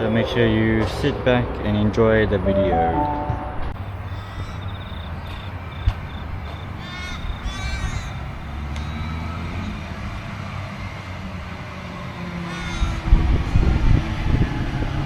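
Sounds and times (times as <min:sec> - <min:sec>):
short high beeps: 0:02.5 - 0:03.7
crow cawing: 0:06.8 - 0:08.3, 0:12.5 - 0:13.0.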